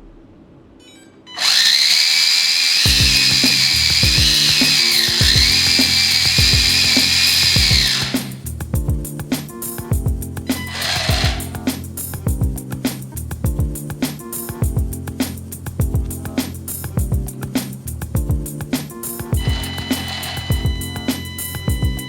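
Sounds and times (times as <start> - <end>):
small electric motor whine: 1.4 - 8.1.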